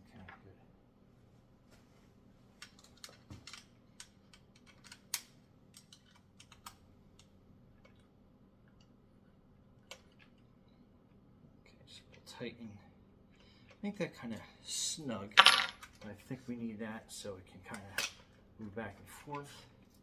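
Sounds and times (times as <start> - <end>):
clicks of small metal parts and tools: 2.6 - 8.1.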